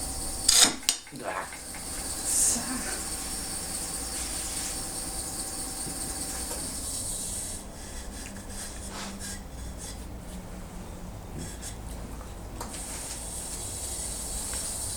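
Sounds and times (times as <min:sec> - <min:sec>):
tool scraping wood: 0:00.0 - 0:07.5
lathe tool shaving wood: 0:00.0 - 0:08.2, 0:12.8 - 0:14.9.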